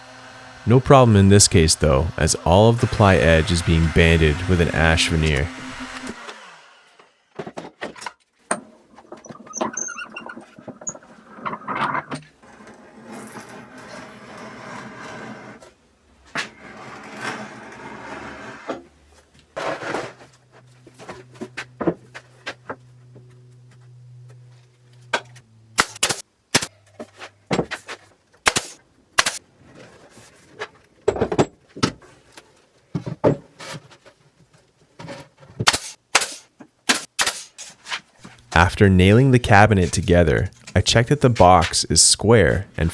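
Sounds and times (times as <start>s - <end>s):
nail gun firing into plywood: 28.4s - 29.4s, 35.6s - 37.5s.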